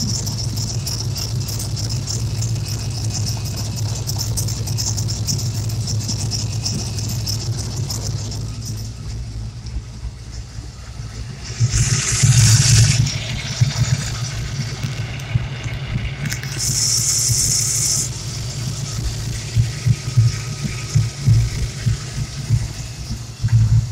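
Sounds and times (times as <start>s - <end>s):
engine idling low rumble: 0.0s - 23.9s
burst of hiss: 11.4s - 13.2s, 16.4s - 18.1s.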